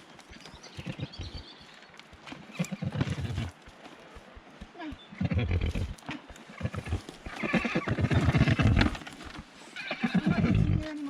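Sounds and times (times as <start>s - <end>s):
horse nickering and whinnying: 2.5s - 3.5s, 5.2s - 9.0s, 9.8s - 10.9s.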